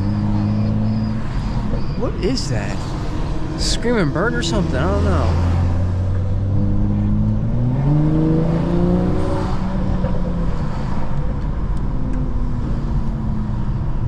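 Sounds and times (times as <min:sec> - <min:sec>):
car engine revving: 0:00.0 - 0:11.2.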